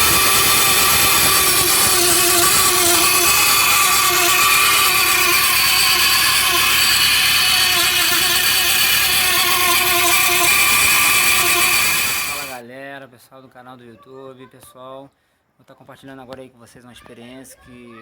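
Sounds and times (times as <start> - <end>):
car engine running: 0.0 - 12.5
metal cover rubbing on pulley: 0.0 - 12.6.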